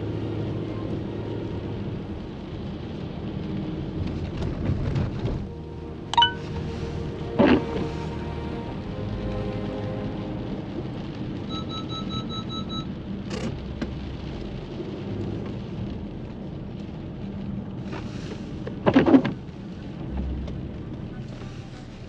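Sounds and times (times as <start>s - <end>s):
low rumble: 0.0s - 22.0s
steady rain: 0.0s - 22.0s.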